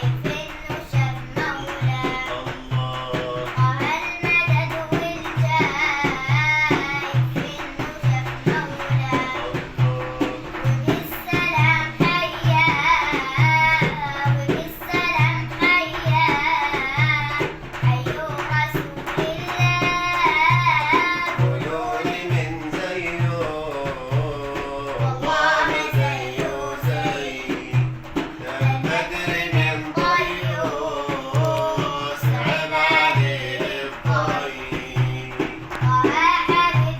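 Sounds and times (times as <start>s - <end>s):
low drum beat: 0.0s - 36.9s
girl singing ornamented melody: 35.8s - 36.9s.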